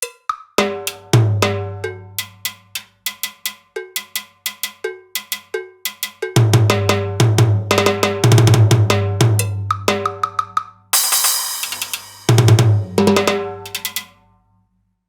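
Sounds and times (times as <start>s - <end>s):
short ringing percussion hits: 11.0s - 13.1s.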